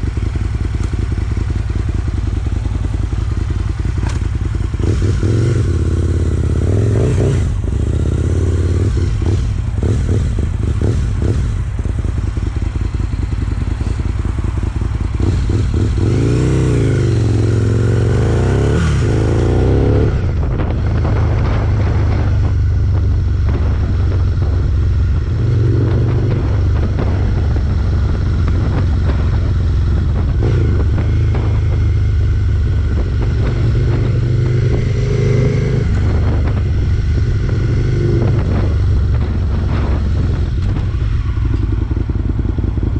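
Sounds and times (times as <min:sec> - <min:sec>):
motorcycle engine running: 0:00.0 - 0:42.9.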